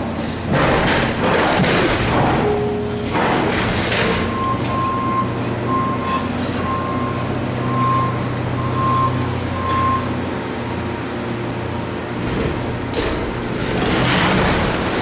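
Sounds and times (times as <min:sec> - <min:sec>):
diesel engine running: 0:00.0 - 0:15.0
reversing alarm beeping: 0:02.4 - 0:10.2.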